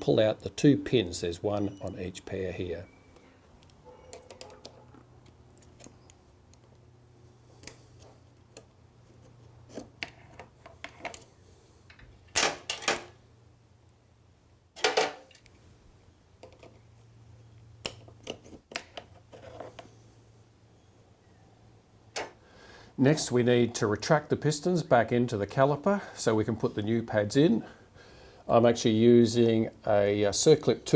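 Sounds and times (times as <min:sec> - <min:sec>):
small metal parts clinking: 0:11.9 - 0:13.2.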